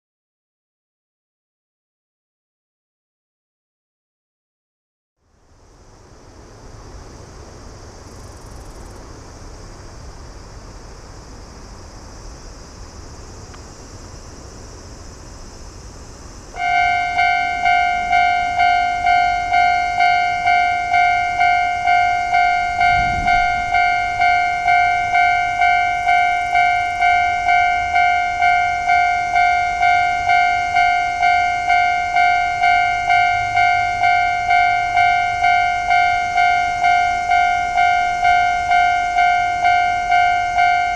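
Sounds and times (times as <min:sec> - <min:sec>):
level crossing warning bell: 0:16.6 - 0:40.9.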